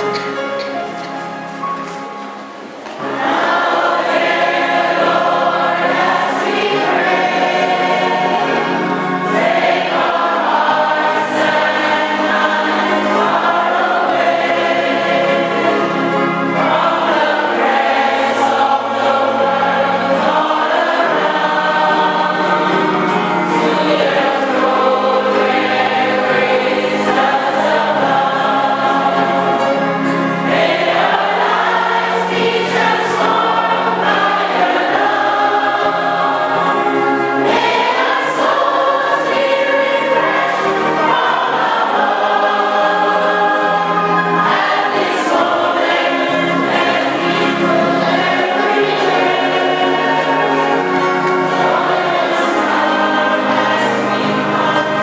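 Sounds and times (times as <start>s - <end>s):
congregation singing a hymn: 0.0s - 55.0s
instrumental accompaniment bass notes: 0.0s - 55.0s.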